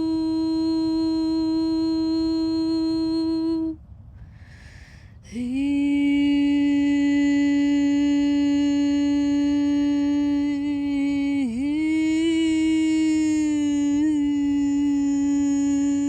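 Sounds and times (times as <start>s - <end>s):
woman humming a steady note: 0.0s - 3.8s, 5.2s - 16.0s
in-breath: 4.1s - 5.3s.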